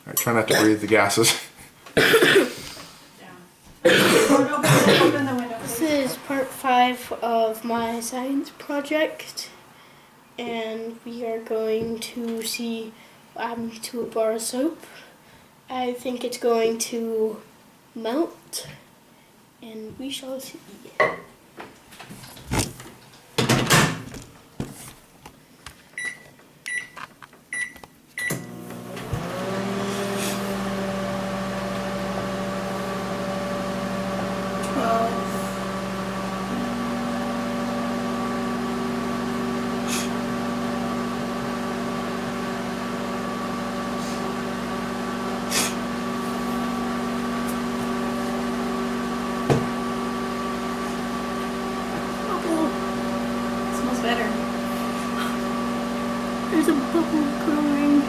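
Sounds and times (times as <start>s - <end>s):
microwave beeps: 26.0s - 28.7s
microwave oven humming: 27.6s - 58.0s.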